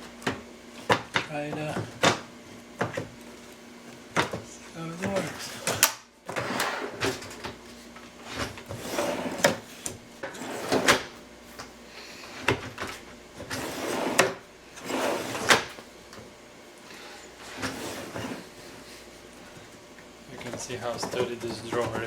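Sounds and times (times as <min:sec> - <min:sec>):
drawer slides rolling: 0:05.1 - 0:07.5, 0:08.2 - 0:11.2, 0:12.4 - 0:15.8, 0:17.0 - 0:19.7.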